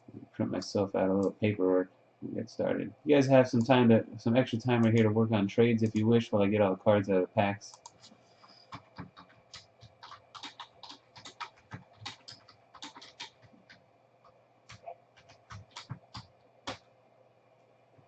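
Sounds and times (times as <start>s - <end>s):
low steady hum: 0.0s - 18.0s
computer keyboard typing: 4.8s - 5.1s, 7.7s - 16.8s.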